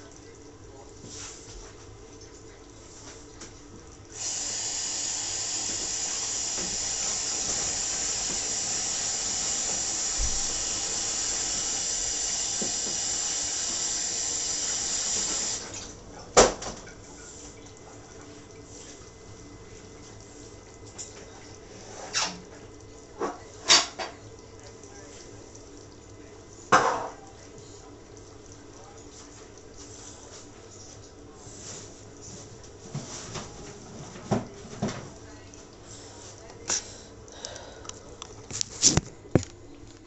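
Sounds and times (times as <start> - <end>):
tap water running into sink: 0.0 - 40.0.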